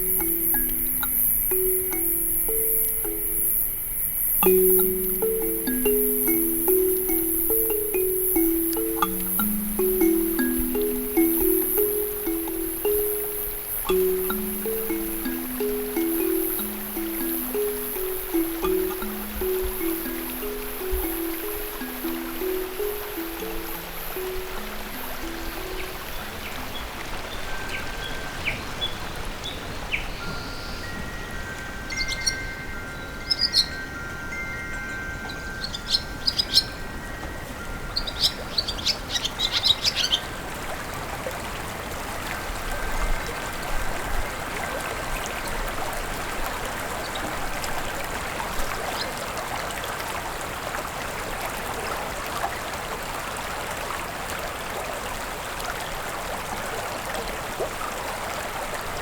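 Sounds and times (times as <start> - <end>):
birds chirping: 0.0 - 31.1, 31.9 - 33.8, 34.7 - 36.9, 37.9 - 40.3
flowing water rushing: 0.0 - 32.8, 37.0 - 59.0
soft chime-like tones: 0.0 - 41.5, 42.4 - 45.8.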